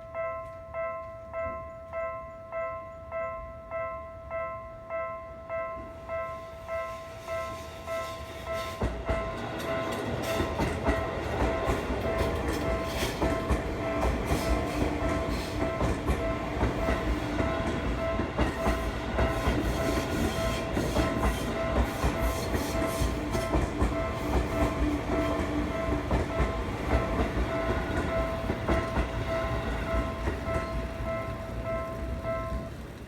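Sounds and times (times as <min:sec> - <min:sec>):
crossing warning bell ringing: 0:00.0 - 0:33.0
train wheels clacking on rail joints: 0:07.3 - 0:33.0.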